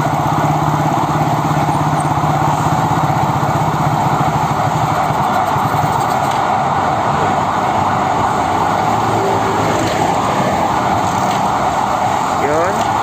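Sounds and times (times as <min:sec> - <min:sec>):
motorcycle engine running steadily: 0:00.0 - 0:06.4.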